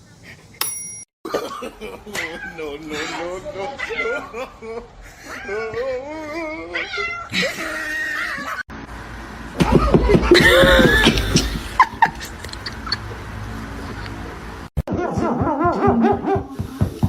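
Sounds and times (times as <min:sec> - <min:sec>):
people laughing: 0:01.3 - 0:06.0, 0:07.3 - 0:08.6, 0:09.6 - 0:13.2.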